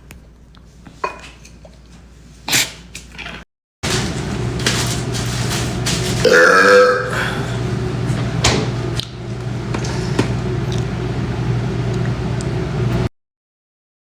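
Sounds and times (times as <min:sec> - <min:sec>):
steady background hum: 0:00.0 - 0:13.1
man burping: 0:06.2 - 0:07.5.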